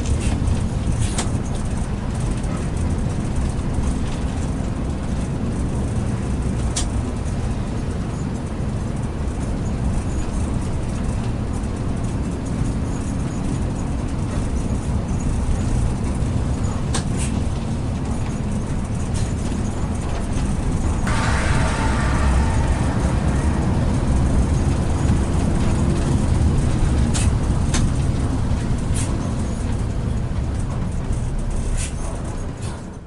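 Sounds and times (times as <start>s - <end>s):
coach engine and road rumble: 0.0s - 33.0s.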